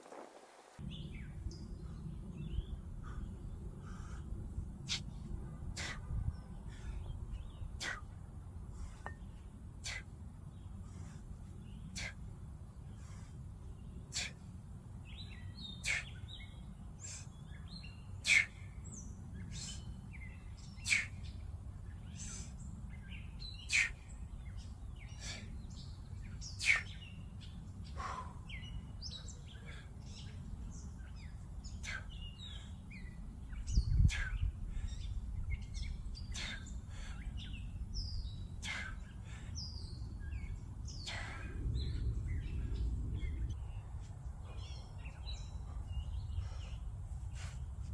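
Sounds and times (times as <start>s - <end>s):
songbirds chirping: 0.6s - 47.9s
low rumble: 40.4s - 46.6s.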